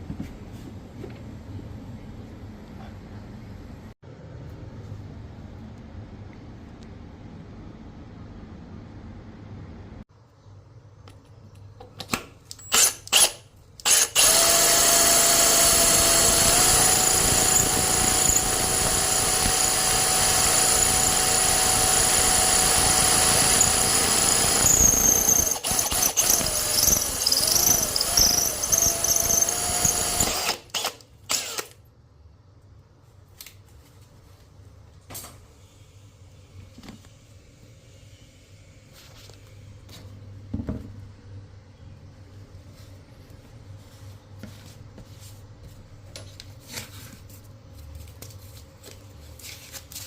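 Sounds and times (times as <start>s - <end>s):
electric drill boring into ceramic: 12.7s - 31.7s.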